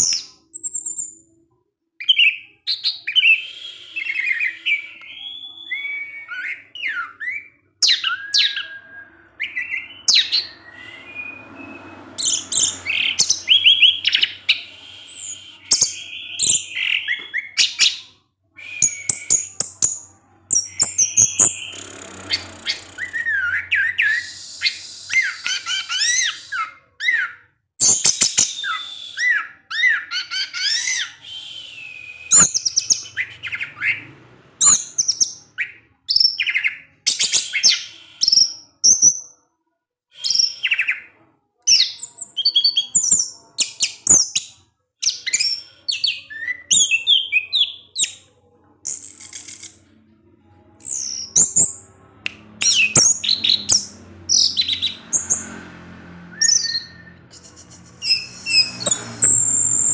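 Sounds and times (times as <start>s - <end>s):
bird singing whistled phrases: 2.0s - 34.0s, 56.3s - 59.9s.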